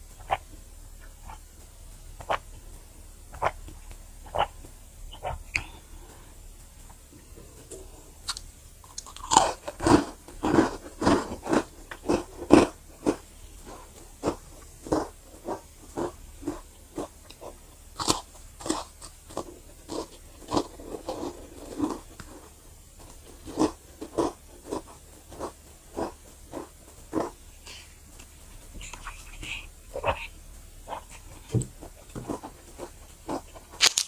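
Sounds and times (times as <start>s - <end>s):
chewing: 7.5s - 34.0s
cookie crunching bites: 8.3s - 13.2s, 14.2s - 22.3s, 30.9s - 34.0s.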